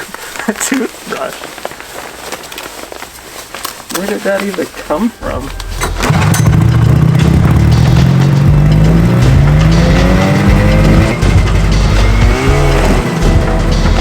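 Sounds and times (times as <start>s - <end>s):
snowmobile engine revving: 5.3s - 14.0s.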